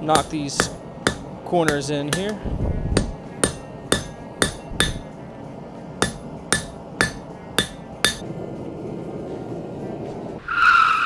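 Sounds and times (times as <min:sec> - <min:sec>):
hammer striking metal: 0:00.0 - 0:05.2, 0:06.0 - 0:08.2.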